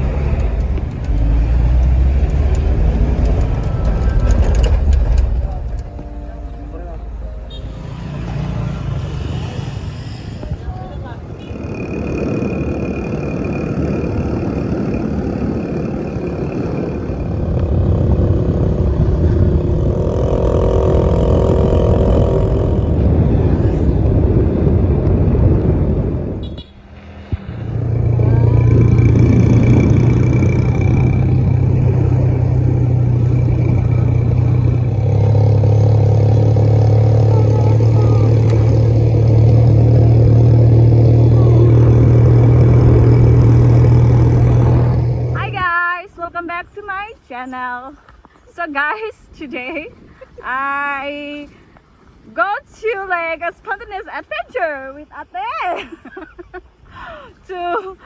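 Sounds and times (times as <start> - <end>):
road and rushing air noise: 0.0 - 58.0
vehicle engine running: 10.6 - 26.3, 26.9 - 46.4.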